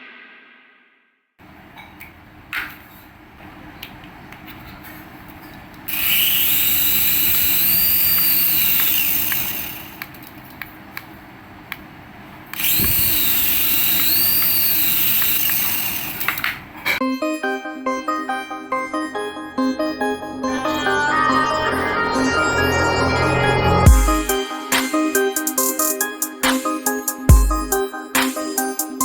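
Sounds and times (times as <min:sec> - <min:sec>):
toy vehicle electronic engine whir: 0:05.9 - 0:10.3, 0:12.6 - 0:16.6.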